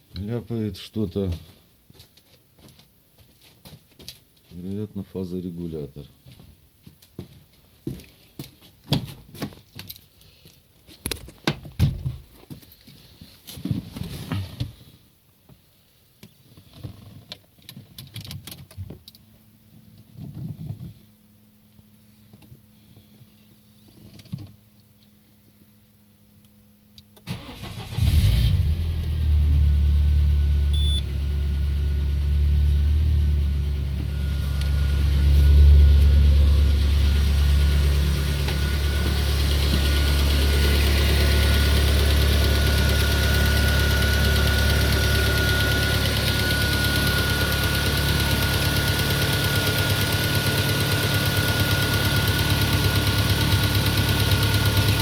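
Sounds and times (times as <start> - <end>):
car engine starting and idling: 27.2 - 55.0
engine knocking: 41.2 - 55.0.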